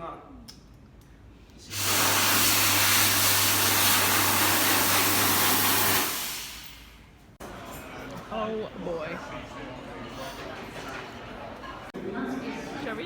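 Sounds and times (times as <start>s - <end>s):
hand dryer blowing air: 1.7s - 6.9s.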